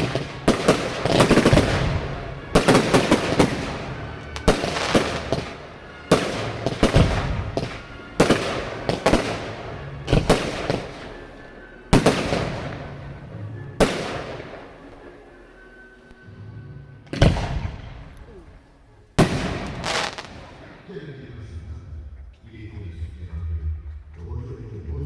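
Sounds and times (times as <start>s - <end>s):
firework shell bangs: 0.0s - 11.2s
crackling firework pops: 19.2s - 20.5s.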